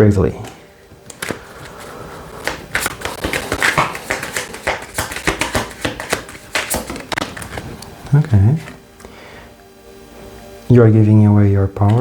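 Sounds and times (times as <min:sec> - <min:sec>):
cards being shuffled: 0:00.4 - 0:08.8.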